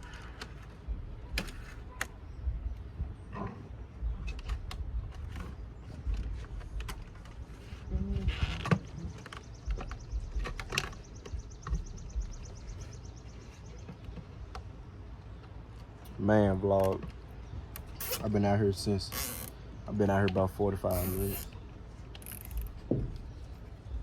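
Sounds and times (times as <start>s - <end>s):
low rumble: 0.0s - 13.1s
hands and tools clicking on wiring: 4.1s - 14.7s, 22.1s - 23.3s.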